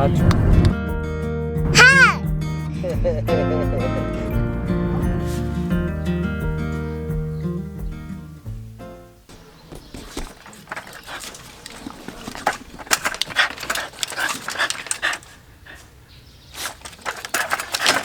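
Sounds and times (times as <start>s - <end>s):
dog snuffling: 4.1s - 7.1s, 9.4s - 18.0s.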